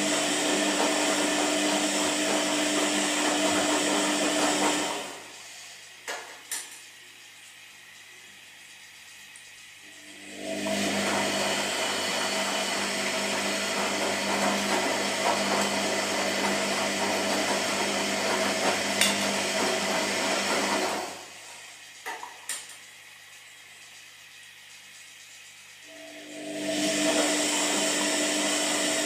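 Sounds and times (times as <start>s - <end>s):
washing machine churning: 0.0s - 29.0s.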